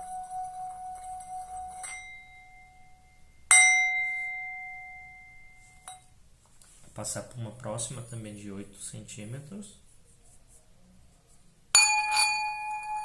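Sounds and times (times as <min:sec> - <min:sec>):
singing bowl ringing: 0:00.0 - 0:06.1, 0:11.7 - 0:13.0.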